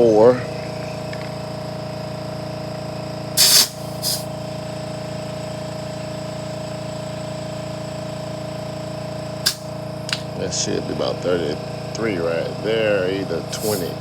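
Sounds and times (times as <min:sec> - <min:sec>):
air compressor running: 0:00.0 - 0:14.0
air hissing at valve: 0:03.4 - 0:10.0, 0:13.4 - 0:14.0.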